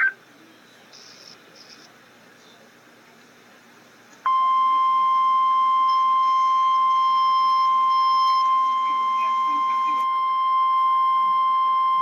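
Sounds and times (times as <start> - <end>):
steady warning alarm tone: 4.3 - 12.0.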